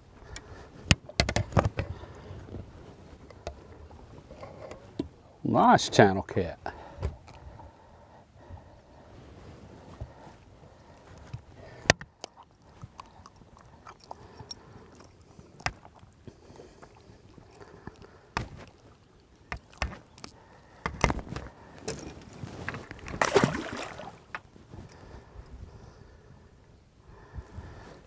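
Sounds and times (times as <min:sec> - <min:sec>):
gear knocking in a boat: 0:17.5 - 0:24.4.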